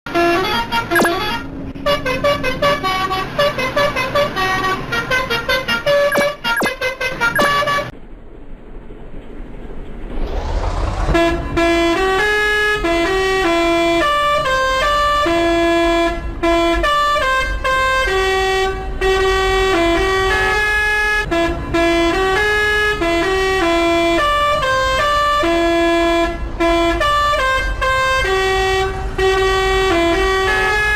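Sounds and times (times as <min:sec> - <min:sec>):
rising hiss: 0:10.0 - 0:11.8
multi-tone horn playing a melody: 0:11.7 - 0:30.9.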